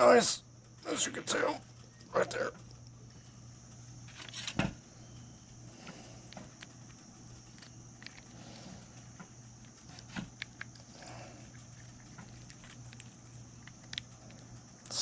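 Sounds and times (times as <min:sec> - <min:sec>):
steady low hum: 0:00.0 - 0:15.0
reel parts clicking: 0:06.3 - 0:08.3.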